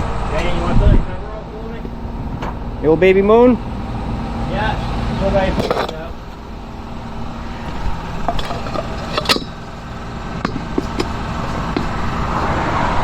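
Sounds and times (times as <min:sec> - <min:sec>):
low mechanical hum: 0:00.0 - 0:13.0
metallic clinks and taps: 0:10.4 - 0:12.0.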